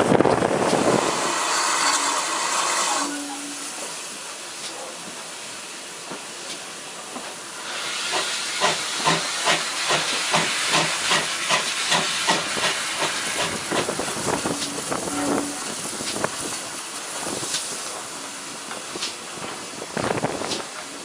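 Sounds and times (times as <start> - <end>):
steam hissing: 0.0 - 21.0
steam locomotive exhaust beats: 5.6 - 21.0.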